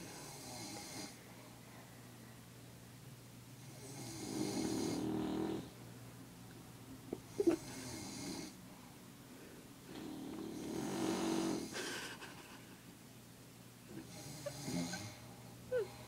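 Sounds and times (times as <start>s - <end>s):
dog snoring: 0.0s - 1.2s, 3.6s - 5.8s, 7.4s - 8.6s, 9.9s - 11.8s, 13.9s - 16.0s
man snoring: 0.0s - 1.2s, 3.7s - 5.7s, 7.5s - 8.6s, 9.9s - 11.9s, 13.9s - 15.2s.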